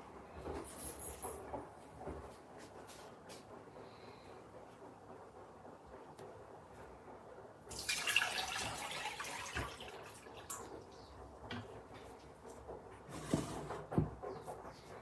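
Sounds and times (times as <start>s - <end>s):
water pouring into bowl: 7.7s - 10.7s.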